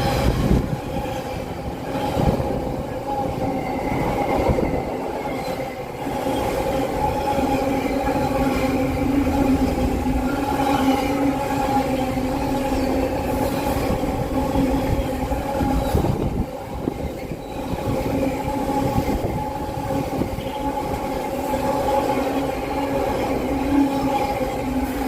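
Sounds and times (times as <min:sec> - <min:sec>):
diesel locomotive drone: 0:00.0 - 0:25.0
train wheels rumbling on rail: 0:00.0 - 0:25.0.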